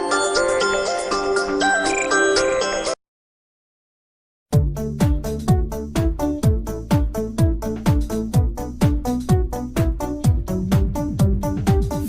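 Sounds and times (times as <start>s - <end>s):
deep kick drum: 4.6s - 12.0s.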